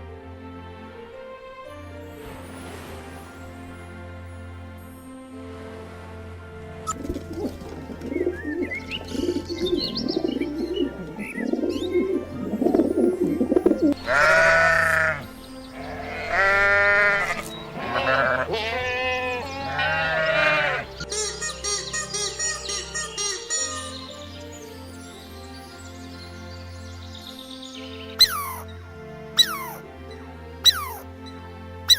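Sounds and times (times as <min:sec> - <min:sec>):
background music: 0:00.0 - 0:31.9
goat or sheep bleating: 0:14.0 - 0:20.9.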